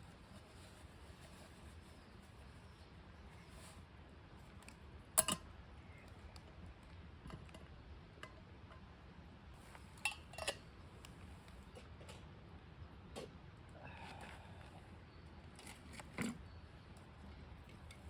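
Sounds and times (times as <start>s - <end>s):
sharp clicks and clinks: 5.2s - 5.4s.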